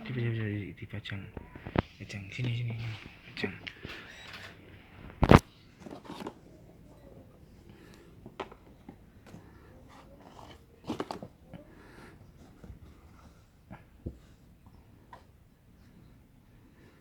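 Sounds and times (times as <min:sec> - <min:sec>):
gift packaging knocks and rustles: 0:05.0 - 0:06.4, 0:07.8 - 0:11.7.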